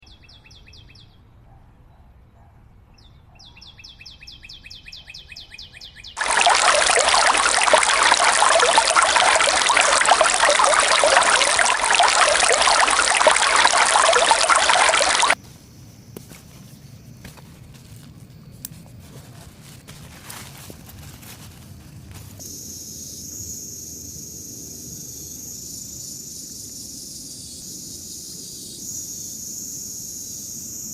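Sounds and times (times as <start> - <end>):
heavy rain pouring: 6.2 - 15.4
high rapid chirping call: 6.2 - 15.4.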